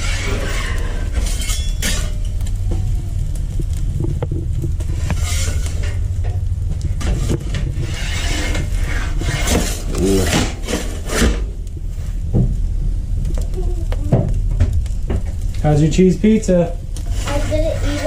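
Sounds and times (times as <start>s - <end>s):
rasping scraping strokes: 0.0s - 2.2s, 4.8s - 6.1s, 7.0s - 12.2s, 17.0s - 18.0s
steady low rumble: 0.0s - 18.0s.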